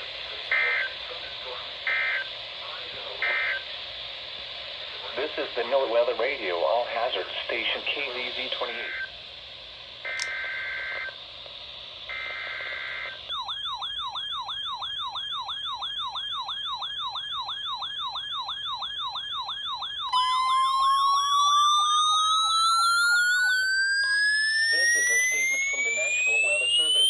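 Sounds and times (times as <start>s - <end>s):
two-tone data bursts: 3.2s - 3.6s, 12.1s - 27.0s
warbling electronic alert tone: 17.1s - 27.0s
rising electronic tone: 20.2s - 27.0s.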